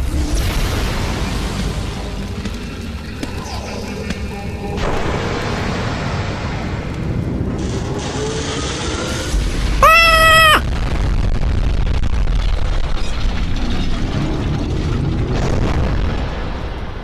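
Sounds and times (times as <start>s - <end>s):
loud pitched wail: 9.8s - 10.6s.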